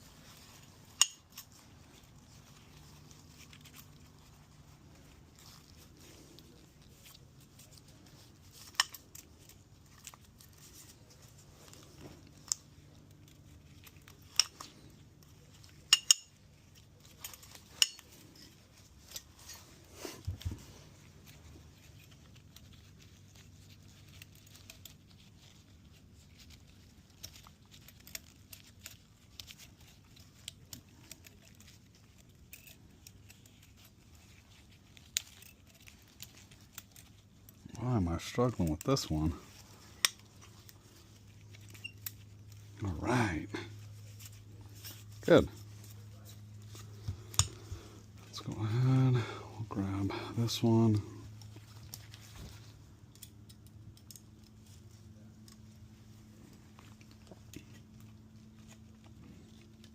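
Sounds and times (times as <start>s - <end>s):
low steady hum: 0.0s - 59.9s
metal tools clinking: 15.6s - 19.7s.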